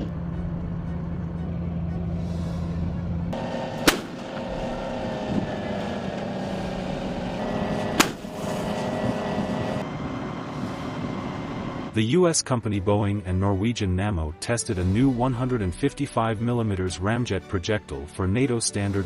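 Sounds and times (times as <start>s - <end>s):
steady rumbling background: 0.0s - 12.6s
artillery gun firing: 3.8s - 4.2s.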